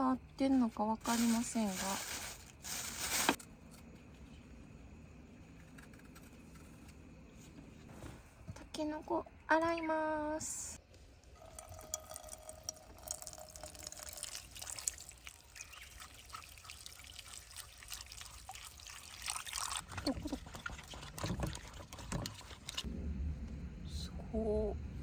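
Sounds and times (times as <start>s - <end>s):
water trickling and pouring: 11.2s - 22.9s
small water splashes: 11.4s - 22.9s.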